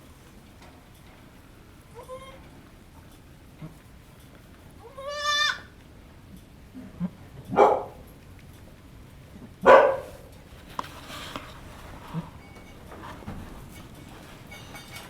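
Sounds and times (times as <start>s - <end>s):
goat bleating: 1.9s - 2.4s, 4.8s - 5.7s
goat harsh cries: 4.8s - 5.7s.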